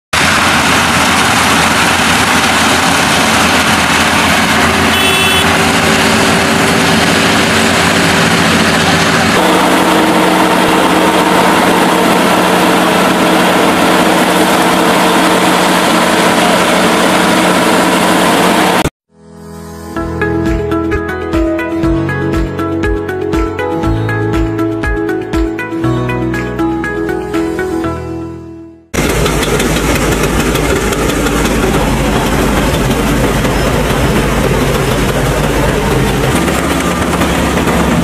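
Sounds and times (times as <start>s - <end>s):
combine harvester running: 0.1s - 18.9s, 29.0s - 38.0s
brief high tone: 4.7s - 5.7s.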